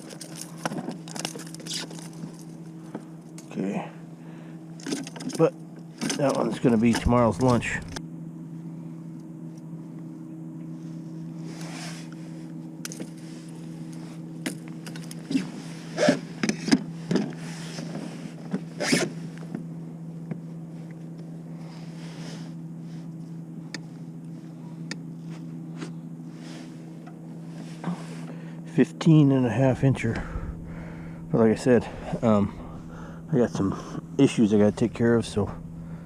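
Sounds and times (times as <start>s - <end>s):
rustling and clicks of handling: 0.0s - 3.6s, 4.8s - 8.0s, 11.5s - 21.3s
low electrical hum: 0.0s - 36.0s.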